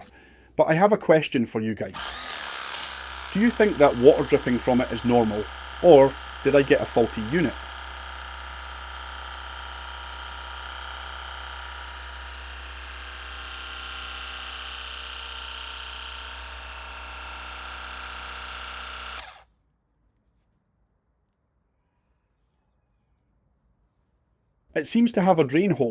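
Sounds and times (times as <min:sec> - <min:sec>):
pressure washer motor whining: 0:00.0 - 0:00.3, 0:01.9 - 0:19.4.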